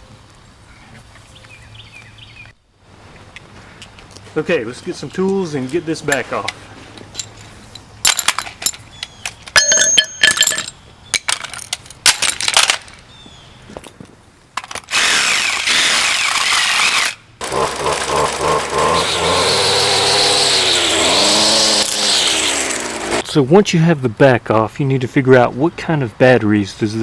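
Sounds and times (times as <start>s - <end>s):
metal tools clinking: 5.0s - 13.0s
power tool running: 14.9s - 23.2s.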